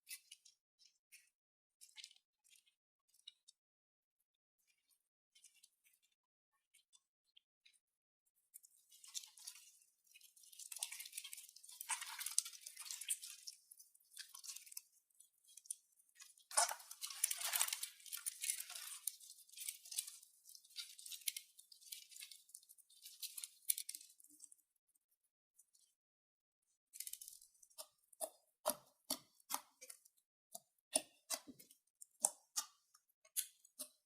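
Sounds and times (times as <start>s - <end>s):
crinkly crunching handling noise: 9.0s - 24.5s, 27.0s - 27.6s.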